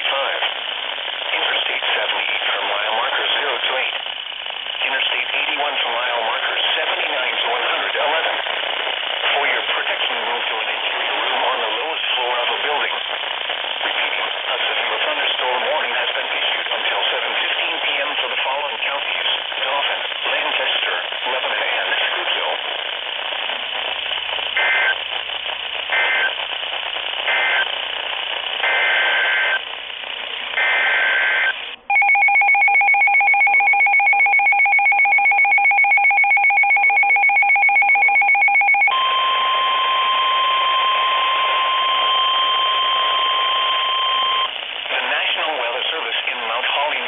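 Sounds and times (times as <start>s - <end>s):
radio static: 0.0s - 32.0s, 38.9s - 47.0s
steady alarm tone: 22.7s - 44.9s
screeching data bursts: 23.6s - 31.9s, 39.0s - 45.5s
two-tone attention signal: 30.6s - 44.5s.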